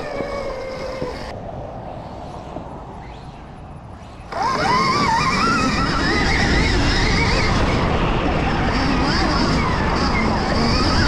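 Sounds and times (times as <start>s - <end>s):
electric motorbike motor whine: 0.0s - 1.4s, 4.3s - 11.0s.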